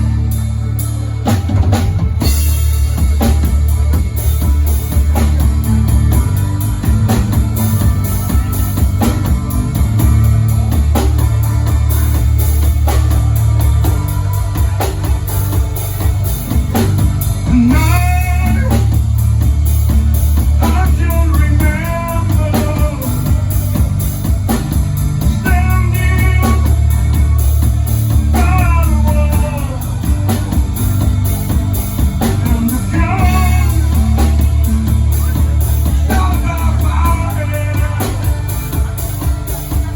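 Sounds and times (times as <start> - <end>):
live rock band: 0.0 - 39.9
person singing: 2.2 - 39.9.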